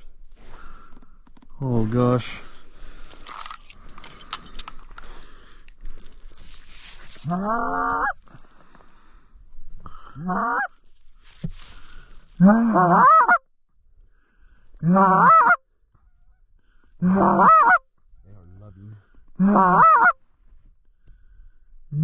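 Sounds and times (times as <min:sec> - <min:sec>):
goose honking: 0:07.2 - 0:08.2, 0:12.4 - 0:13.4, 0:14.8 - 0:15.6, 0:17.0 - 0:17.8, 0:19.4 - 0:20.2.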